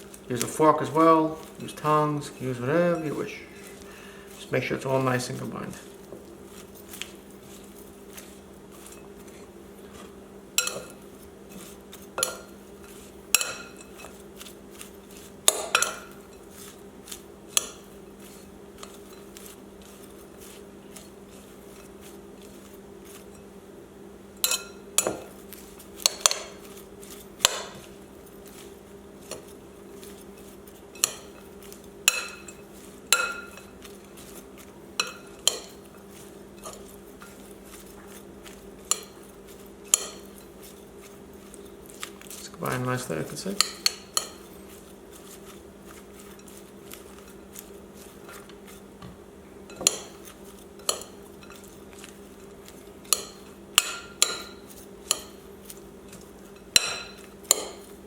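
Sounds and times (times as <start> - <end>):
steady low hum: 0.0 - 58.0
metal utensil clinking against bowl: 10.6 - 11.0, 32.1 - 33.7, 35.0 - 37.4, 39.9 - 40.8, 53.0 - 55.4, 56.6 - 57.9.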